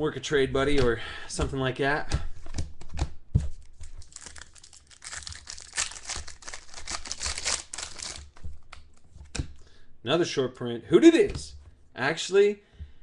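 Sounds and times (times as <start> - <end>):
wrapper crinkling and tearing: 3.9 - 9.0.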